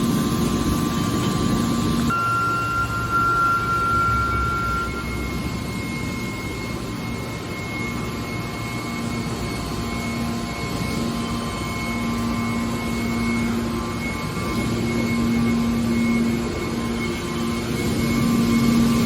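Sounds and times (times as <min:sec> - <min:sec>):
machinery mechanical roar: 0:00.0 - 0:19.0
low steady hum: 0:00.8 - 0:07.9.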